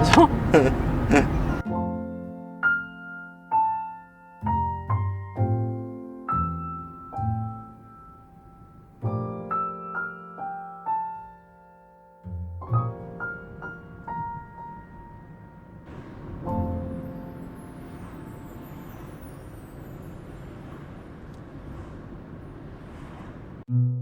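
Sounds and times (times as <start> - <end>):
gentle piano melody: 0.0 - 21.2.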